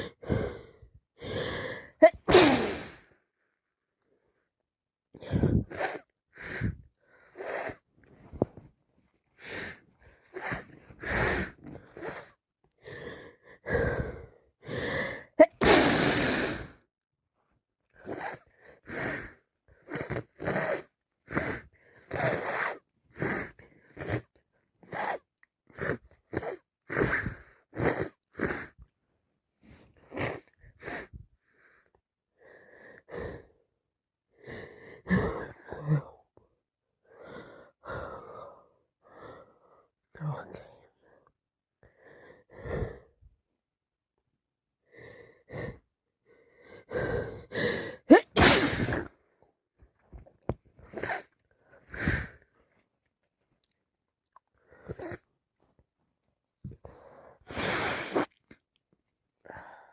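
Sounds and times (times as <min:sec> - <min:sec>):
loud sneeze: 0:02.0 - 0:03.0, 0:15.4 - 0:16.2, 0:48.1 - 0:49.1
gasping breaths and sniffs: 0:09.4 - 0:16.8, 0:17.9 - 0:28.9, 0:44.9 - 0:52.9, 0:54.3 - 0:55.7, 0:56.7 - 0:58.6.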